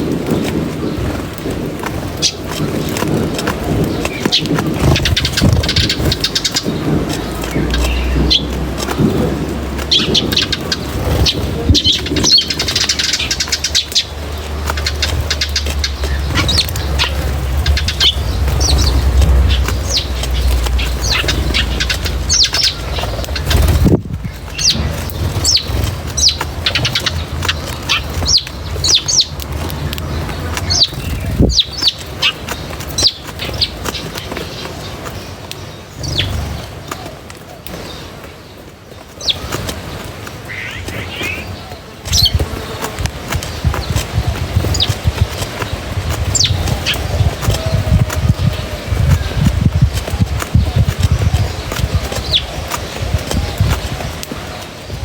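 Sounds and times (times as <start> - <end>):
small birds chirping: 0.0 - 55.0
low rumble: 3.0 - 31.8.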